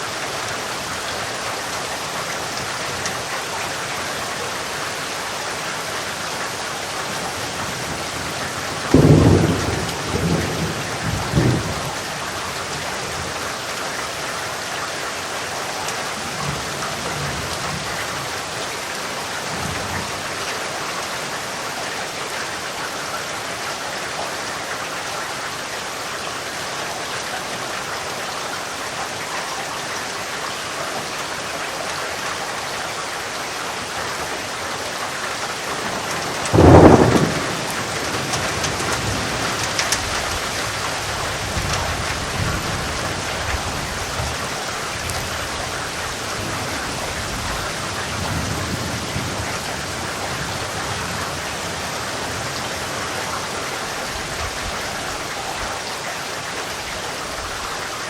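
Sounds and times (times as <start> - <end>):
heavy rainfall: 0.0 - 58.0
thunder rumbling: 7.8 - 12.1, 35.7 - 52.6.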